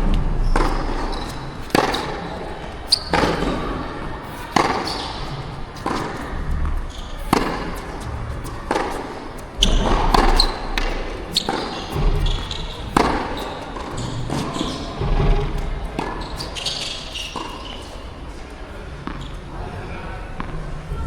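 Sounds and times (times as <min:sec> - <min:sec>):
tennis ball hits: 0:00.5 - 0:18.0.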